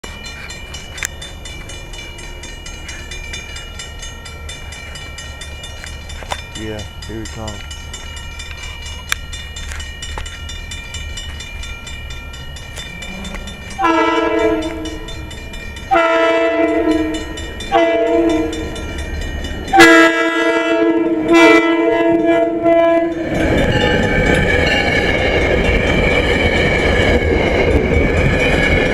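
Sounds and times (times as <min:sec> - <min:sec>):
train rumbling: 0:00.0 - 0:28.9
engine and wheel noise rushing: 0:07.6 - 0:19.8, 0:21.1 - 0:28.9
locomotive air horn blasts: 0:13.8 - 0:15.1, 0:15.9 - 0:18.6, 0:19.7 - 0:23.2.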